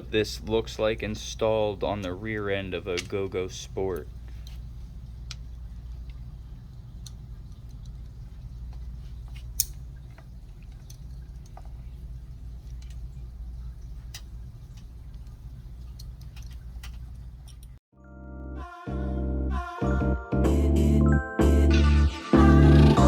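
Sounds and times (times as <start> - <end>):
shop background hum: 0.0 - 17.8.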